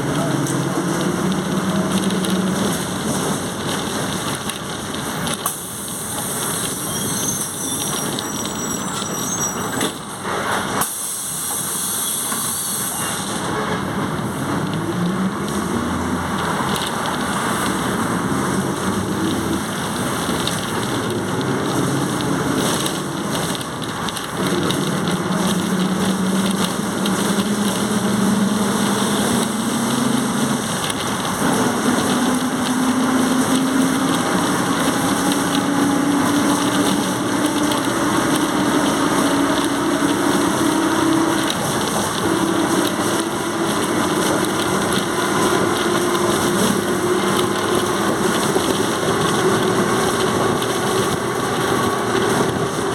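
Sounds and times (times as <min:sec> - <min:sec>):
bus transmission whine rising: 0:00.0 - 0:52.9
road noise hiss: 0:00.0 - 0:52.9.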